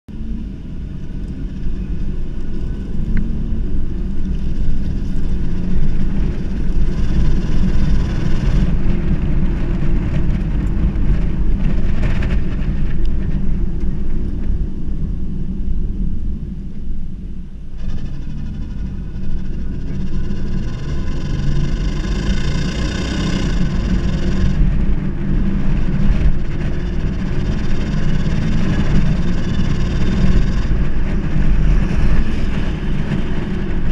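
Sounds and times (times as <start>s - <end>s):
engine exhaust low drone: 0.1s - 33.9s.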